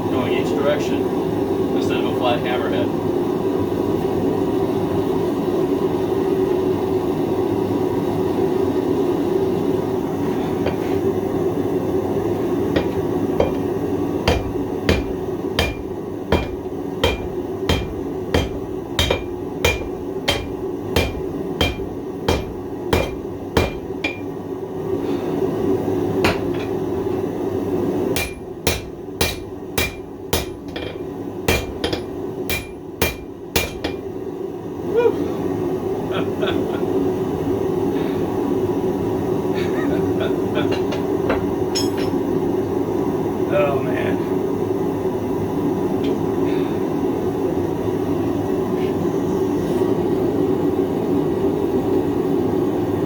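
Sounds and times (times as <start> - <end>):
steady drone: 9.7 - 26.9
hammer ringing on hot steel: 12.8 - 24.4, 26.2 - 26.8, 28.2 - 34.1, 40.8 - 42.3.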